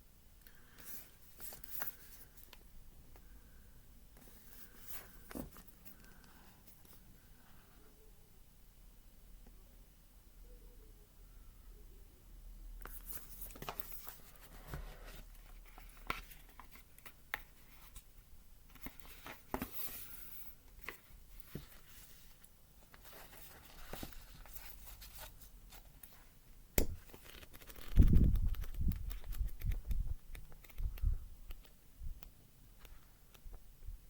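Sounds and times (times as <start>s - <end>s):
small clicks and taps: 26.8s - 33.6s
paper wrapping rustling and tearing: 27.0s - 29.8s.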